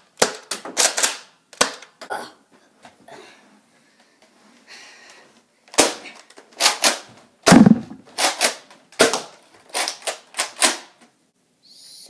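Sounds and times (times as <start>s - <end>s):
foam dart blasters firing: 7.5s - 8.0s.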